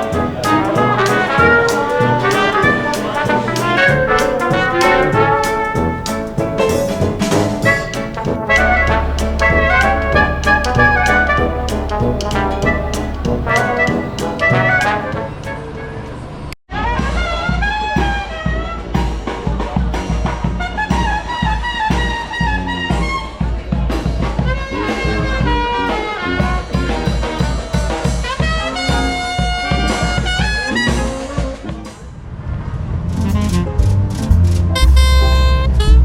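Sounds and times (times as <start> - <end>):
steady drum beat: 0.0 - 15.5
deep bass line: 0.0 - 15.6, 33.0 - 36.0
trumpets and trombones: 0.0 - 16.0, 33.1 - 36.0.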